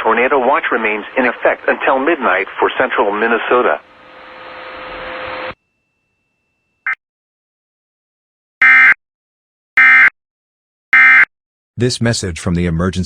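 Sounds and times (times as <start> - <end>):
radio static hiss: 0.0 - 3.9.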